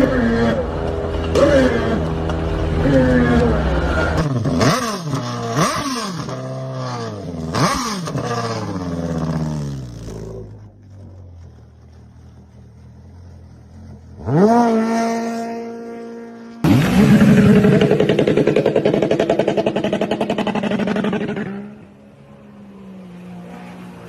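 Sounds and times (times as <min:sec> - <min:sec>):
engine revving: 0:00.0 - 0:24.0.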